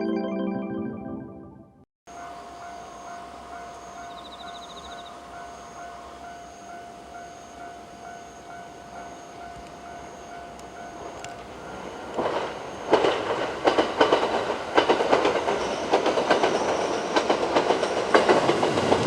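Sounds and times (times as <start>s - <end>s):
level crossing warning alarm: 2.1s - 13.5s.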